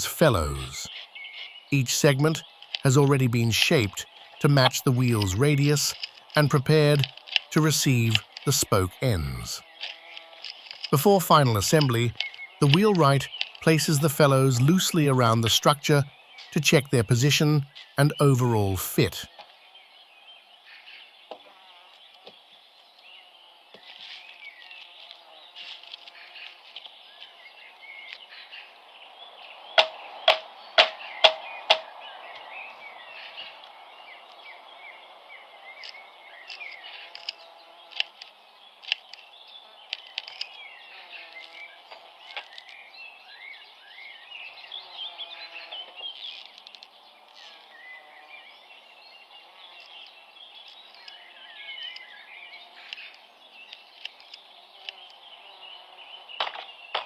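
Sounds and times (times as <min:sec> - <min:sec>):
birds chirping and singing: 0:00.0 - 0:57.0
faint outdoor background: 0:00.0 - 0:57.0
sharp knocks: 0:29.8 - 0:31.9.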